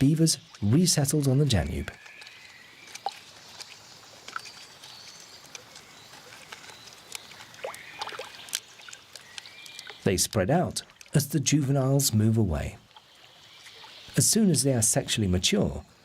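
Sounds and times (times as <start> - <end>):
water sloshing and splashing: 0.0 - 11.3, 12.8 - 14.3.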